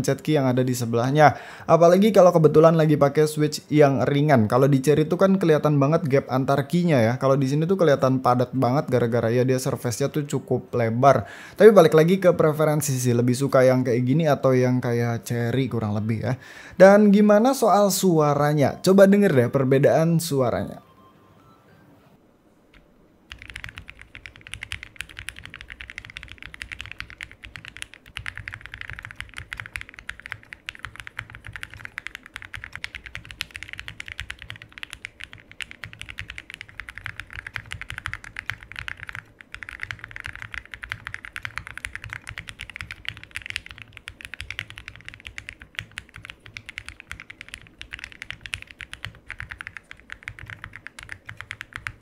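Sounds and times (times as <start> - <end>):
mechanical keyboard typing: 22.7 - 52.0.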